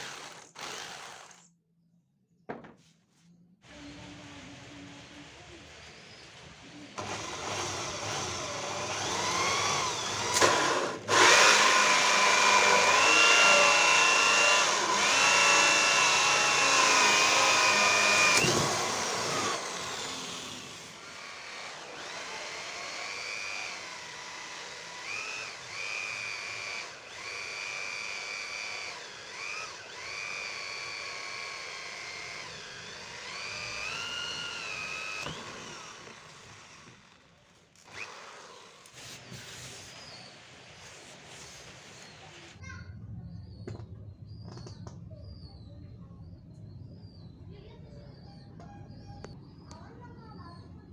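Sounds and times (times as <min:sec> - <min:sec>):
circular saw whining: 0:03.7 - 0:42.6.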